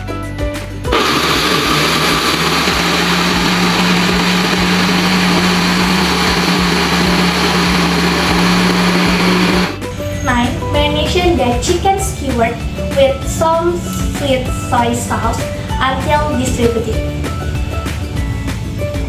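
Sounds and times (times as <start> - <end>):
electric blender running: 0.9 - 9.8.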